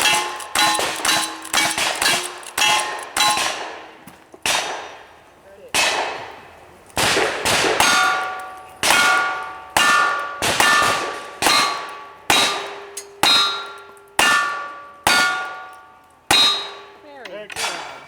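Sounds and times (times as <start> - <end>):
steel target ringing: 0.0 - 4.8, 7.8 - 18.0.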